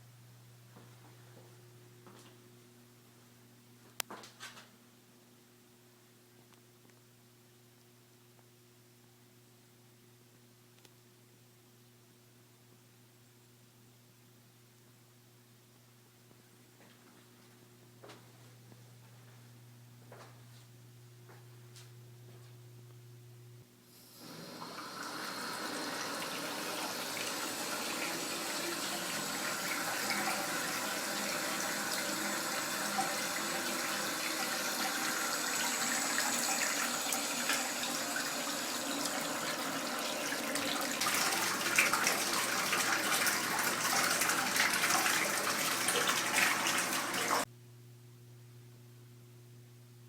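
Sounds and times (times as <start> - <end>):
water running from faucet into tub: 24.2 - 47.4.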